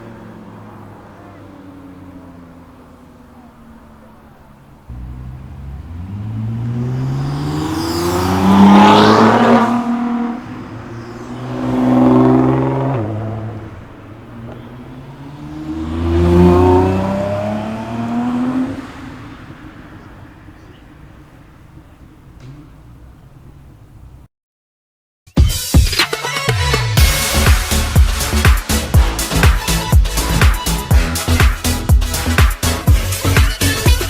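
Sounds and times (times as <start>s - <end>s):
car engine revving hard: 0.0s - 22.1s.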